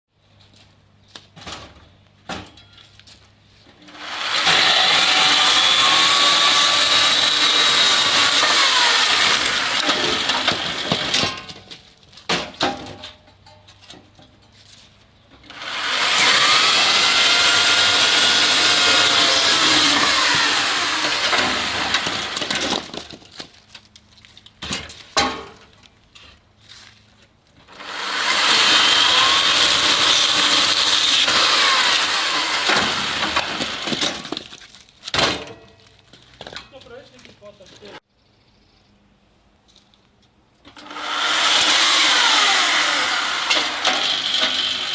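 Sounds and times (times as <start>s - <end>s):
power saw cutting wood: 3.8s - 11.4s, 15.4s - 23.2s, 27.7s - 34.5s, 40.7s - 44.9s.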